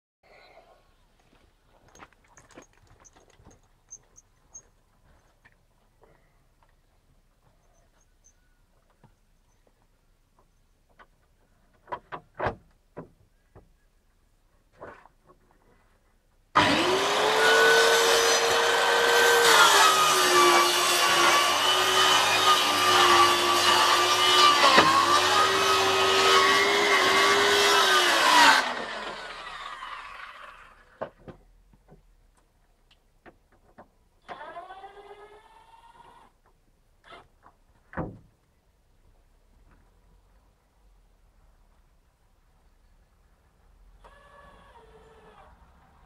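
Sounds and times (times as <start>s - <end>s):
saw winding down: 16.6s - 31.0s
track saw running: 16.6s - 31.0s.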